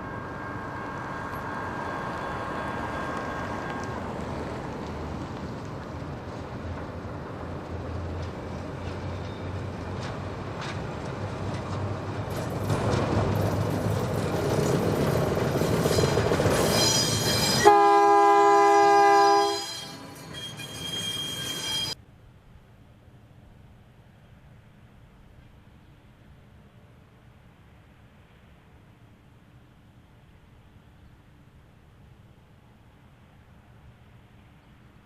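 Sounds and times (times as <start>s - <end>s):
diesel locomotive running: 0.0s - 22.0s
chorded train horn blast: 17.6s - 20.1s.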